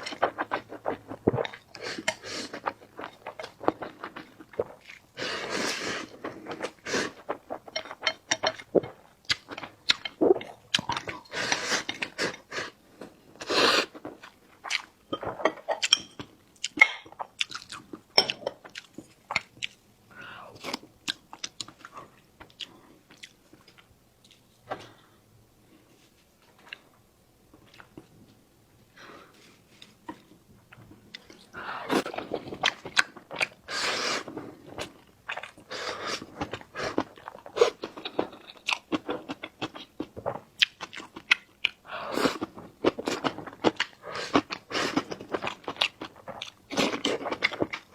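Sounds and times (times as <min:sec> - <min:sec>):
wet chewing and crunching: 0:00.0 - 0:05.2, 0:06.0 - 0:12.5, 0:13.8 - 0:19.8, 0:20.6 - 0:24.5, 0:29.8 - 0:47.9.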